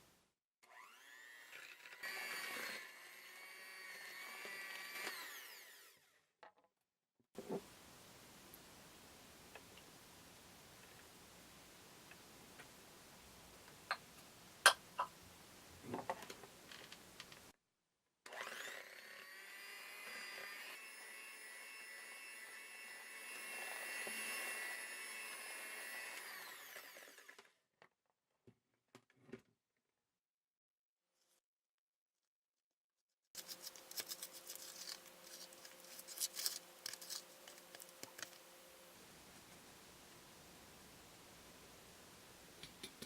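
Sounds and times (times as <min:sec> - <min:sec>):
electric mixer motor whining: 0:00.6 - 0:06.2, 0:18.3 - 0:27.5.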